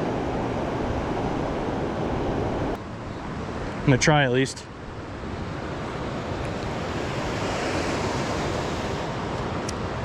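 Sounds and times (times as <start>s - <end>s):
river water rushing: 4.7s - 10.0s.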